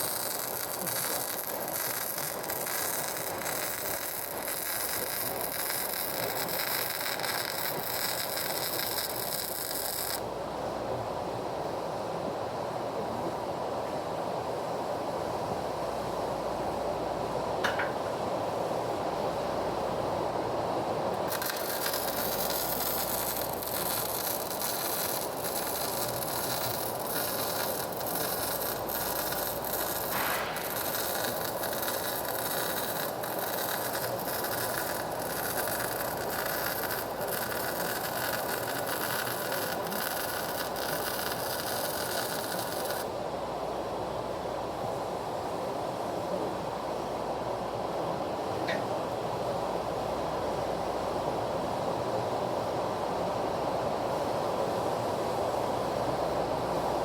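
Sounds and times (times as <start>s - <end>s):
welding arc crackling: 0.0s - 10.3s, 21.1s - 43.1s
background hiss: 0.0s - 13.4s, 14.0s - 57.0s.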